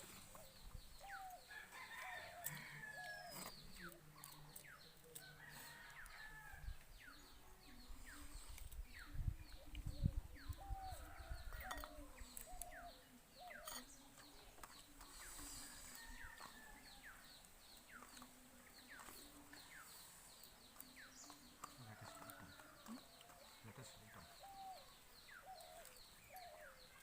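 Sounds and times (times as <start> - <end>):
low wavering bird calls: 22.2 - 27.0.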